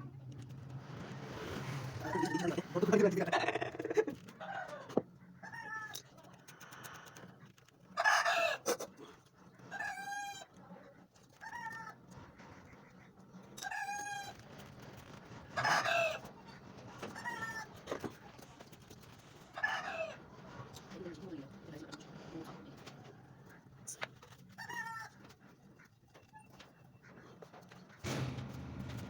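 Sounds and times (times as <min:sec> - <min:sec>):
chicken-like bird calling: 0:15.6 - 0:16.3, 0:24.5 - 0:25.2.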